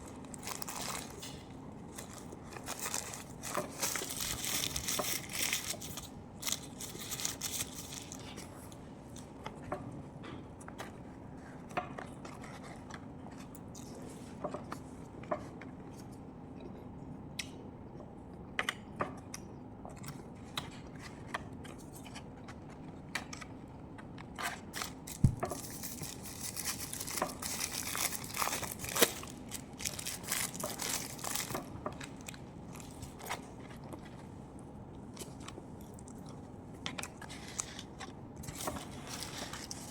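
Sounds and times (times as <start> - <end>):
crinkling: 0.0 - 9.3, 24.2 - 39.9
person eating crunchily: 24.6 - 34.4.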